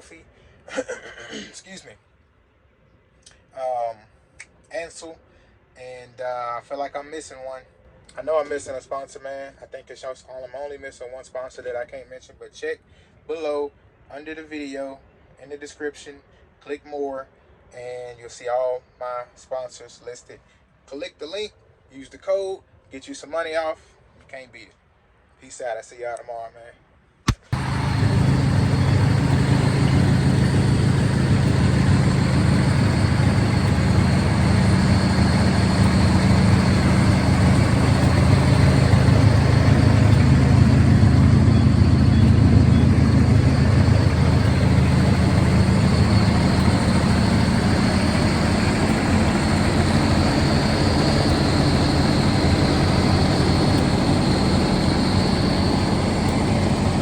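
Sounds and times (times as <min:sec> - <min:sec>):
engine droning steadily: 0:27.4 - 0:57.0
faint high whine: 0:27.6 - 0:57.0.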